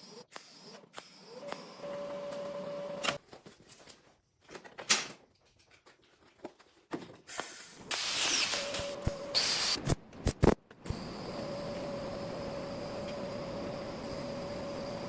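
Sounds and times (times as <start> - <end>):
welding hissing and crackling: 7.4 - 15.0.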